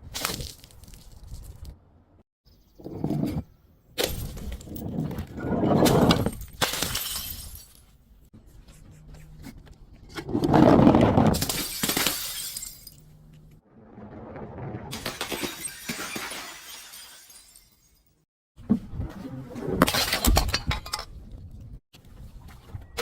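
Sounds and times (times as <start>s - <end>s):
glass bottles shattering: 5.9s - 7.9s, 11.3s - 13.1s, 14.9s - 18.2s.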